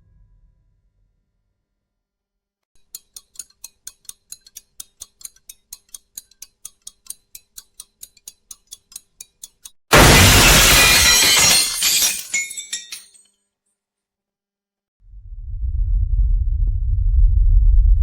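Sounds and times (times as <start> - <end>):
echoing clock ticking: 2.8 - 9.8
glass shattering: 9.9 - 13.3.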